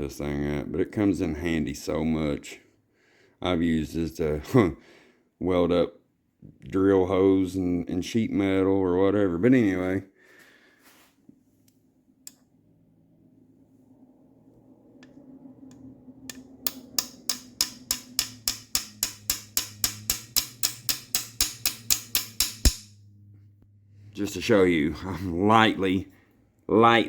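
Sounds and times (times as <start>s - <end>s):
small hammer tapping metal: 16.3s - 23.0s.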